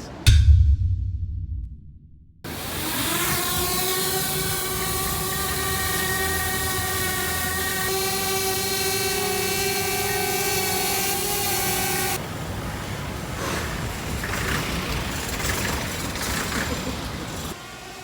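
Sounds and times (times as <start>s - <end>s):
rushing outdoor noise: 9.4s - 18.0s.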